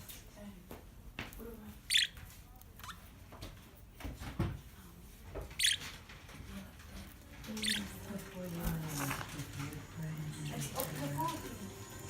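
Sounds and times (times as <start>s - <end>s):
small birds chirping: 1.6s - 3.2s, 5.4s - 12.0s.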